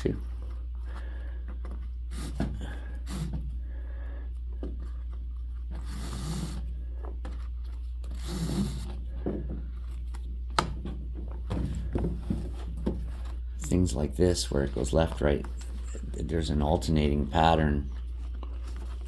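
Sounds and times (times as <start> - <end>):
rope rasping through drum hoop: 4.5 - 10.0.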